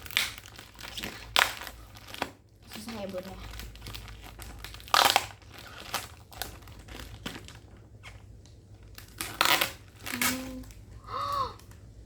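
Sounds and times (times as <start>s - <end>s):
packaging crinkling and rustling: 0.0s - 10.8s.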